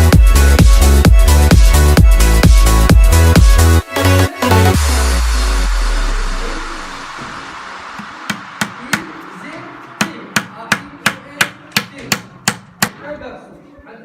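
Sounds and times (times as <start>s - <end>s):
electronic music with heavy bass: 0.0s - 11.4s
hammer blows: 7.1s - 13.1s.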